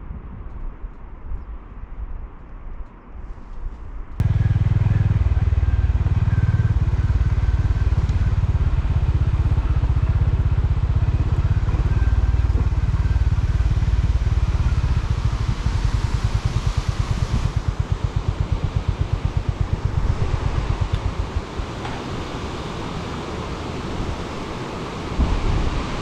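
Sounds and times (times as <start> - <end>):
motorcycle engine running: 4.2 - 26.0.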